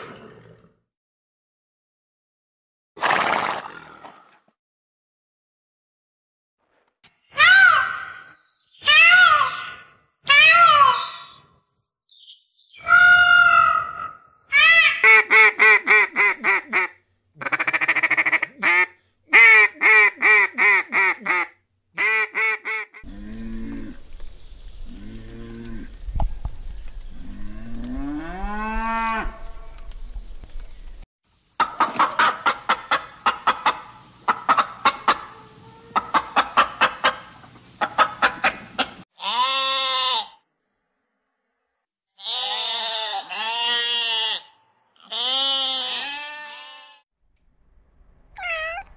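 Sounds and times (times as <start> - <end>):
cow mooing: 24.9 - 25.9.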